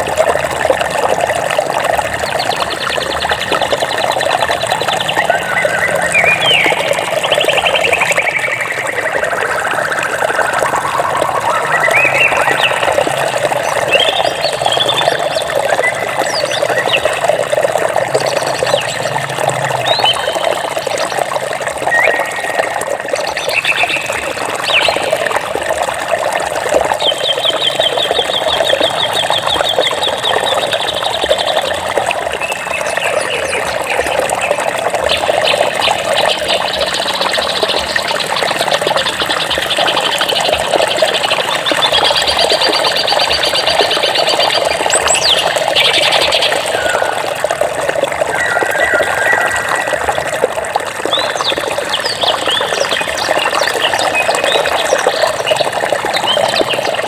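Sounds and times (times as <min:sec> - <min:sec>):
stream water flowing: 0:00.0 - 0:57.0
birds chirping and trilling: 0:02.2 - 0:19.2, 0:21.8 - 0:25.2, 0:32.4 - 0:47.3, 0:48.2 - 0:57.0.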